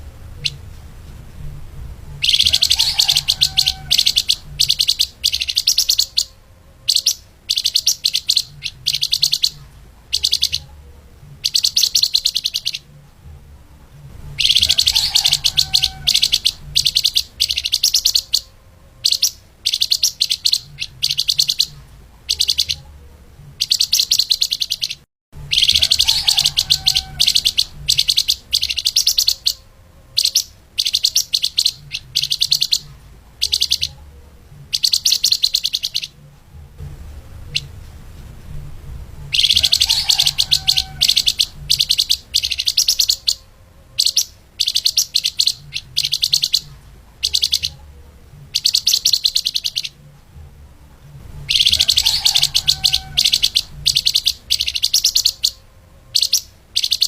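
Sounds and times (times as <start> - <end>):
songbird trilling: 0.3 - 0.6, 2.2 - 10.8, 11.4 - 12.9, 14.3 - 22.9, 23.6 - 34.0, 34.7 - 36.2, 39.3 - 47.9, 48.5 - 50.0, 51.5 - 57.0.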